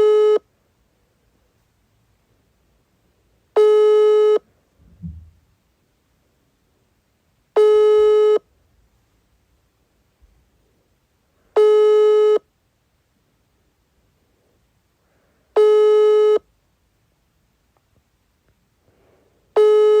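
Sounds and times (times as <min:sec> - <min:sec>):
telephone ringback tone: 0:00.0 - 0:00.4, 0:03.6 - 0:04.4, 0:19.6 - 0:20.0.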